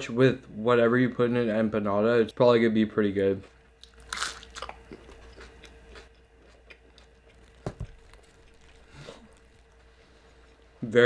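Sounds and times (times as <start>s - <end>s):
person chewing food: 3.4s - 10.8s.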